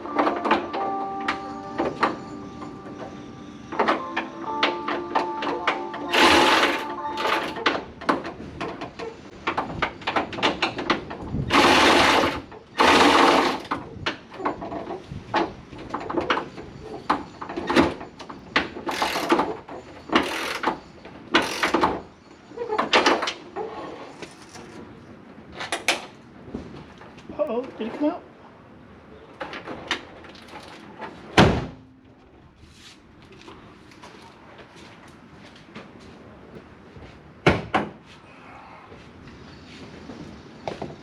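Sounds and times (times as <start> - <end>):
tools clicking and knocking: 17.1 - 22.0.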